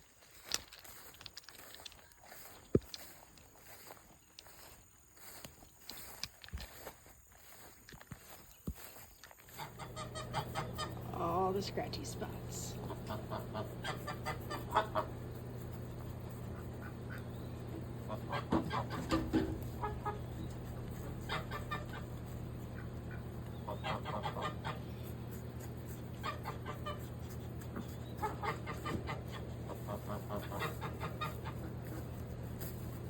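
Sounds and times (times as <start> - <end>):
steady low hum: 0.4 - 33.0
chickens clucking: 8.2 - 33.0.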